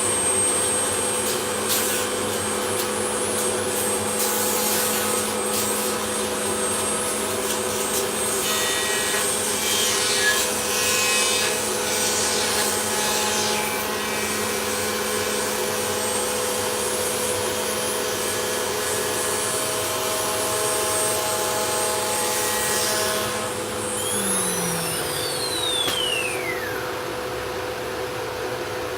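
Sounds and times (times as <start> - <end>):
rough wood cutting noise: 22.0 - 26.9
router spindle whine: 22.2 - 27.6.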